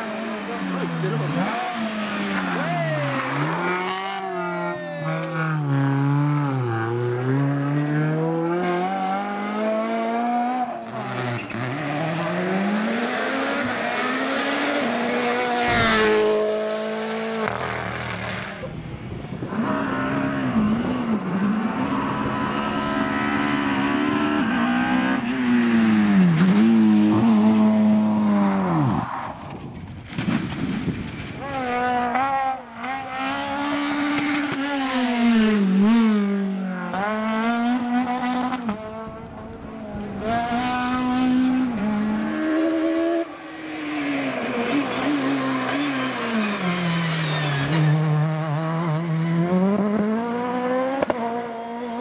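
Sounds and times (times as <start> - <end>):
rally car engine revving: 0.0 - 52.0
sharp crack: 29.4 - 31.6
tyre squeal: 44.7 - 48.1.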